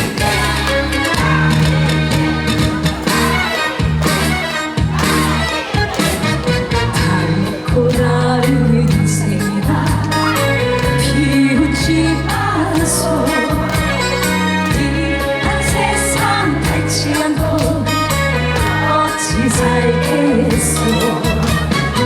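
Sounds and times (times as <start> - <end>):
backing music with drum beat: 0.0 - 22.0
woman singing: 6.7 - 22.0.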